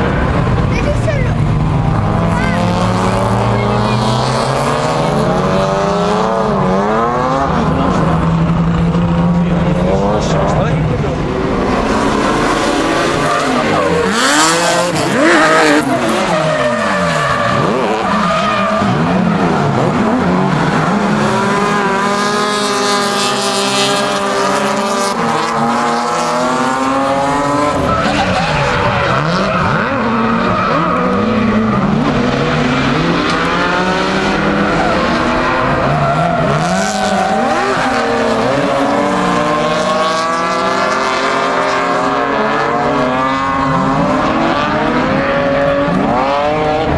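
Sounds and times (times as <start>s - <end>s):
car engines revving: 0.0s - 46.9s
tyres squealing and skidding: 9.8s - 46.9s.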